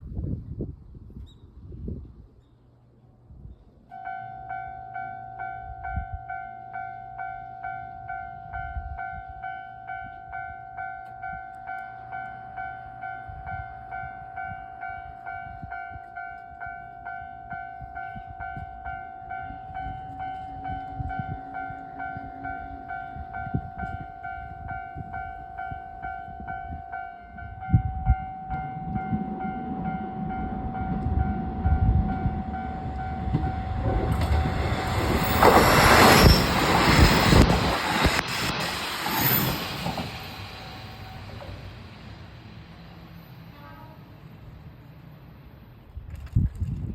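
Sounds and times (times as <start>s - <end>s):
level-crossing alarm bell ringing: 3.9s - 38.6s
diesel train passing: 4.0s - 46.0s.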